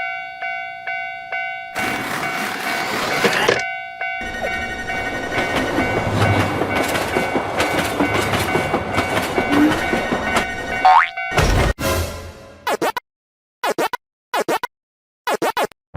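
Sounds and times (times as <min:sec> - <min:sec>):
train wheels clattering over rails: 0:04.2 - 0:10.8.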